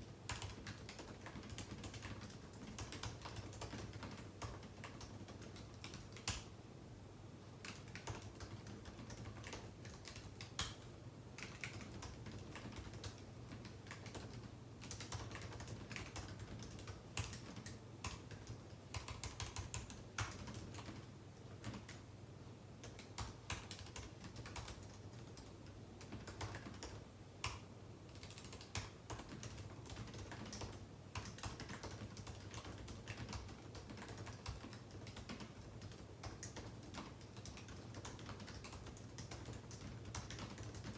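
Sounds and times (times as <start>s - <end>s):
computer keyboard typing: 0.1s - 6.5s, 7.6s - 22.1s, 22.8s - 40.9s.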